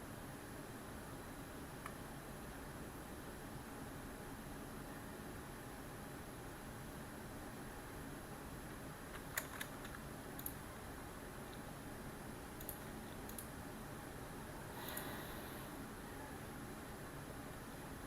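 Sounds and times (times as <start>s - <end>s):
steady background hiss: 0.0s - 18.0s
computer keyboard keystrokes: 9.1s - 10.6s, 12.6s - 13.5s.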